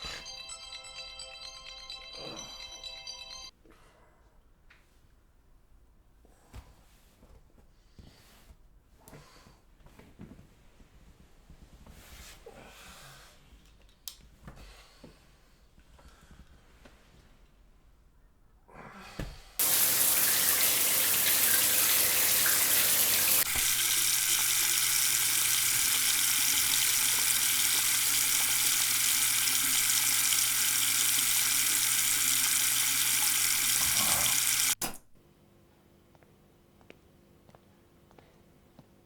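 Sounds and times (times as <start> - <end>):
tap water running into sink: 19.6 - 34.8.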